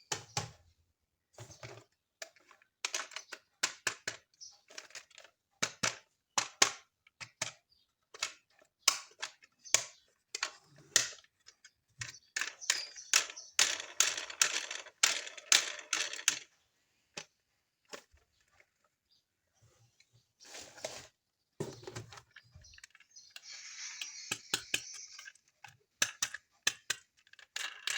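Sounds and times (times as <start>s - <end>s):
plastic toy parts clicking: 2.2s - 16.5s, 22.3s - 27.9s.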